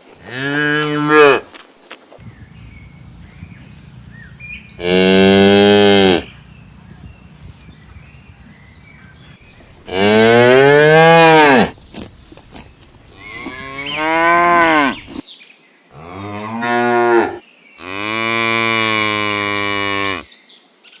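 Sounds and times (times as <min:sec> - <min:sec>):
cow mooing: 0:02.4 - 0:07.4, 0:09.9 - 0:11.7, 0:13.2 - 0:15.2.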